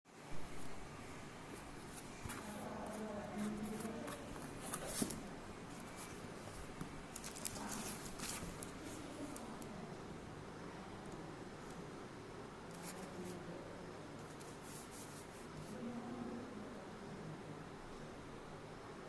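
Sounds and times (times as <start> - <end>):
packaging scrapes and rustles: 7.1 - 9.1.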